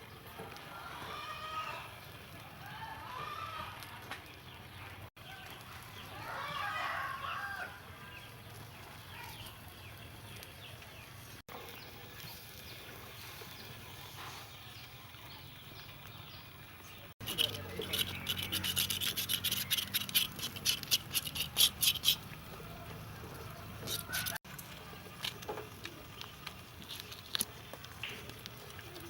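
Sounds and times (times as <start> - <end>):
rasping scraping strokes: 17.2 - 22.3, 23.8 - 24.4.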